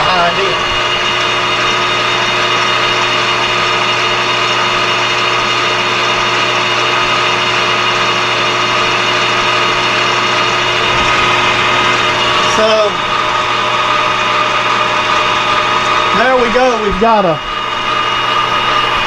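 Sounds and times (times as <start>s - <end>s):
lathe tool cutting metal: 0.0s - 19.0s
metal lathe whining: 0.0s - 19.0s.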